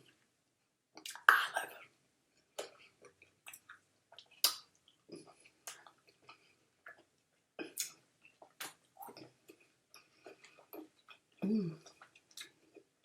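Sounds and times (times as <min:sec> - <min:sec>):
wet mouth smacks and clicks: 0:01.0 - 0:01.5, 0:03.5 - 0:04.9, 0:05.6 - 0:06.0, 0:07.7 - 0:09.2.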